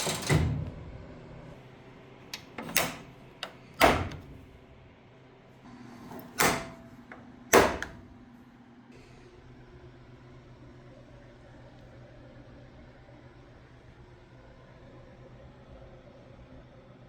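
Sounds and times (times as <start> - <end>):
hood latch clunks and clicks: 2.4 - 4.5, 6.2 - 6.8, 7.5 - 8.0.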